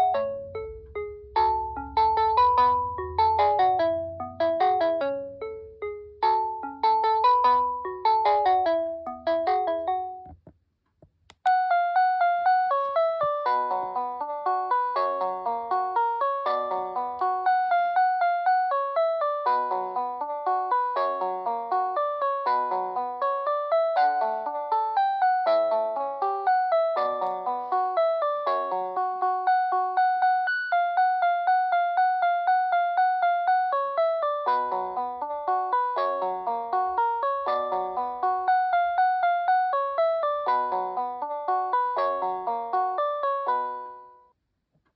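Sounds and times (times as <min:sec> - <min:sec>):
telephone ringtone melody: 0:00.0 - 0:10.3.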